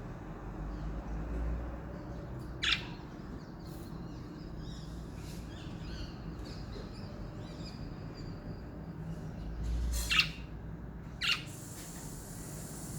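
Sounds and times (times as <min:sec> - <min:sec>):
budgerigars chirping and warbling: 0:02.6 - 0:03.0, 0:10.0 - 0:10.4.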